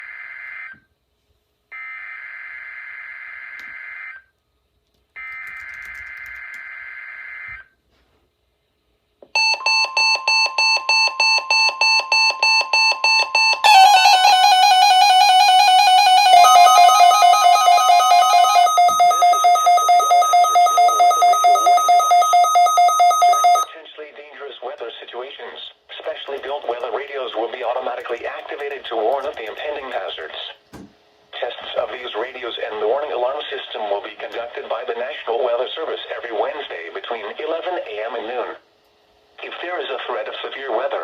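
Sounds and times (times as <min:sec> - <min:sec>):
buzzing data bursts: 0:09.4 - 0:23.7
pulsing electronic alarm beeps: 0:09.4 - 0:23.7.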